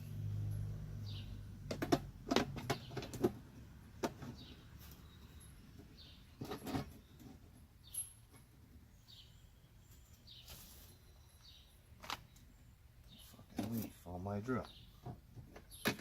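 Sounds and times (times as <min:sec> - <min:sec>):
bird chirping: 0:01.0 - 0:01.4, 0:04.2 - 0:16.0.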